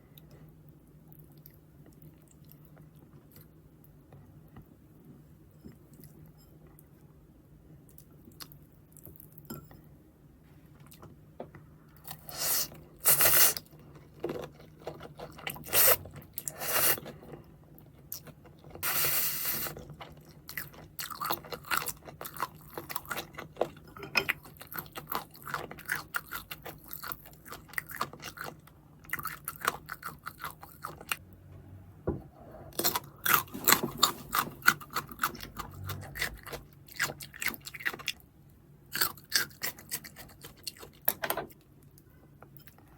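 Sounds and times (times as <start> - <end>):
person chewing: 12.0 - 31.2, 32.7 - 38.2.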